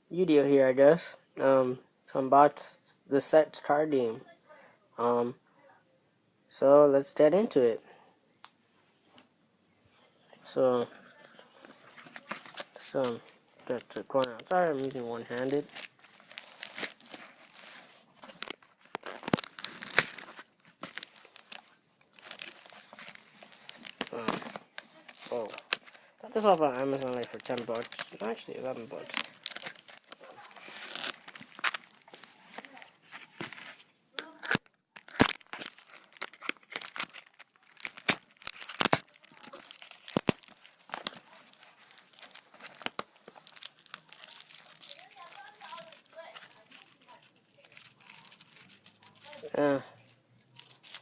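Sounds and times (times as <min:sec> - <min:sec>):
plastic shrink-wrap crinkling and tearing: 0:11.2 - 0:51.0.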